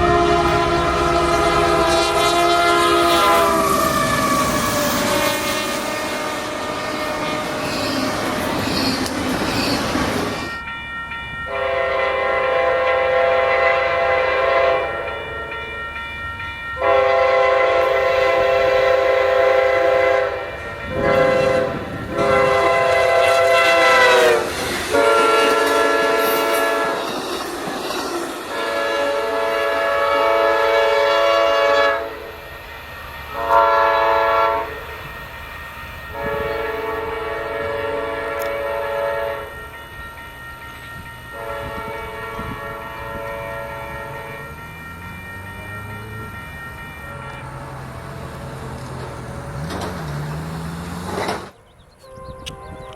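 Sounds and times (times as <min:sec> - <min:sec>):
off-key locomotive air horn: 0:00.0 - 0:08.5, 0:11.5 - 0:15.1, 0:16.8 - 0:27.1, 0:28.5 - 0:32.4, 0:33.3 - 0:34.9, 0:36.1 - 0:39.5, 0:41.3 - 0:44.6, 0:49.6 - 0:52.9.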